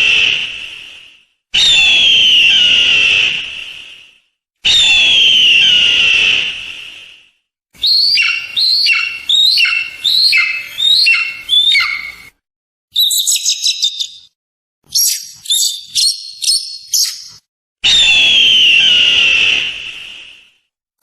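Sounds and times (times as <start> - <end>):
eagle calling: 7.8 - 12.3, 13.0 - 14.3, 14.9 - 17.4.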